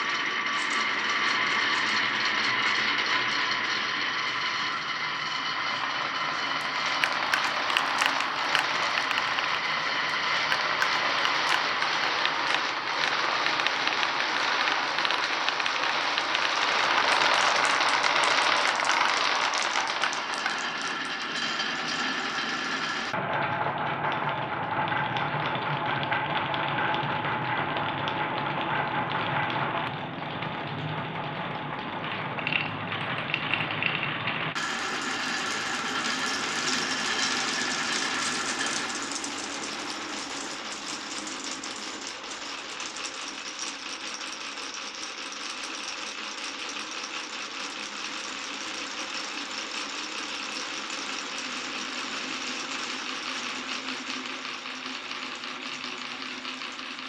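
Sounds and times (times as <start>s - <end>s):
marbles rattling down a marble run: 6.6s - 23.2s, 34.6s - 57.0s.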